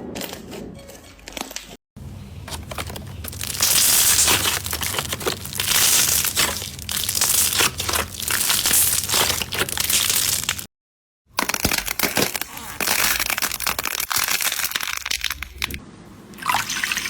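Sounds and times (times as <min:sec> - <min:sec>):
crunchy slime crackling: 0:02.0 - 0:10.7, 0:11.4 - 0:15.8.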